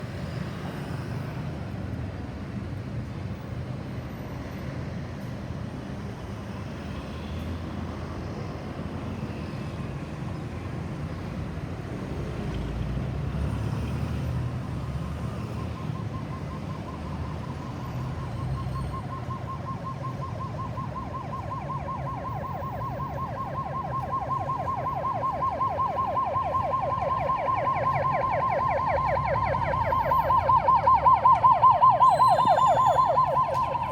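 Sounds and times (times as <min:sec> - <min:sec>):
road traffic noise: 0:00.0 - 0:33.9
ambulance siren: 0:14.6 - 0:33.9.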